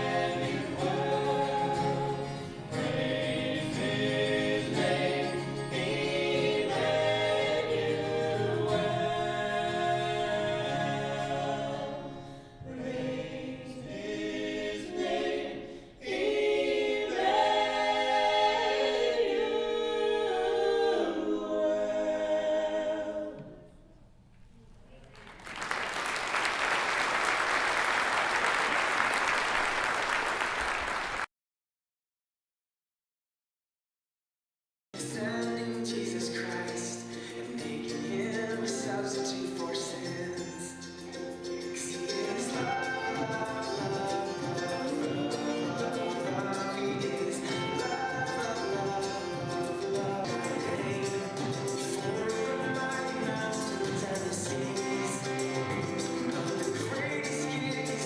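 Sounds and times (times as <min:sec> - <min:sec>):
choir singing: 0:00.0 - 0:23.8, 0:35.0 - 0:58.0
audience applause: 0:25.1 - 0:31.3.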